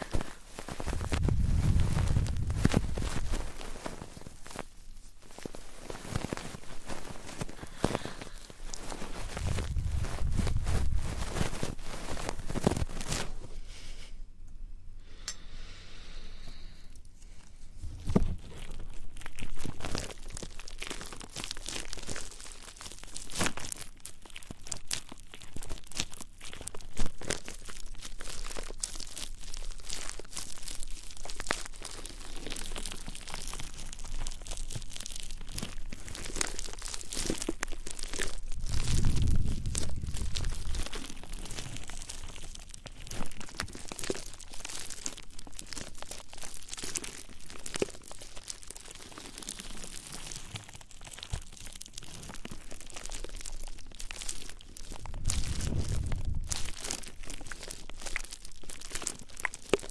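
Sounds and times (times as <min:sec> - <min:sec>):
crinkly scratching on microphone: 0:00.0 - 0:13.6, 0:17.3 - 0:59.9.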